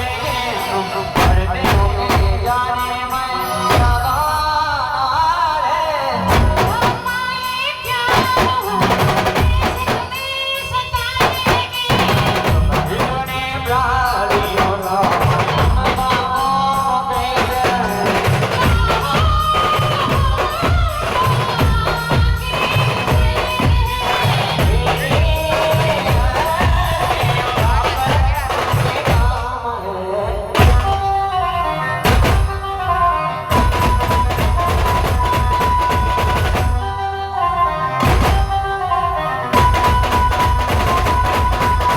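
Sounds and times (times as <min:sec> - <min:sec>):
driving drum beat: 0:00.0 - 0:04.4, 0:06.2 - 0:32.9, 0:33.5 - 0:37.0, 0:38.0 - 0:38.7, 0:39.6 - 0:41.9
band playing a melody: 0:30.6 - 0:41.9.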